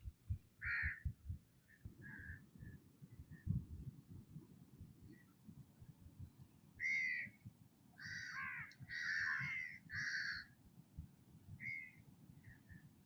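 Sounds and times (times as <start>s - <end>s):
crow cawing: 0.6s - 1.1s, 6.8s - 7.4s, 8.0s - 10.5s, 11.6s - 12.0s.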